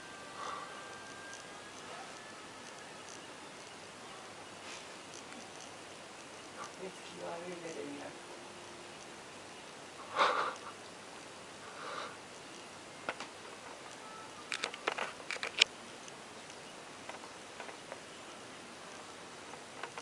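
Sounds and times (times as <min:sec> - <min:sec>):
small sharp clicks and taps: 0:12.4 - 0:18.0.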